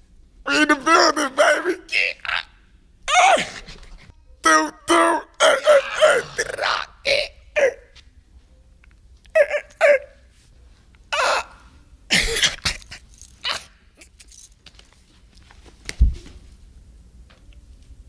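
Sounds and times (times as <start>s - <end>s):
man barking vocal noises: 0.5s - 2.5s, 4.4s - 8.0s, 9.3s - 10.2s.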